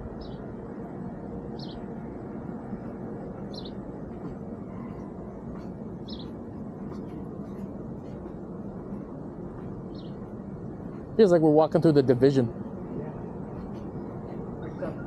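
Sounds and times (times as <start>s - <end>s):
small bird chirping: 0.2s - 0.5s, 1.6s - 1.9s, 3.5s - 3.8s, 6.0s - 7.1s, 9.9s - 10.2s.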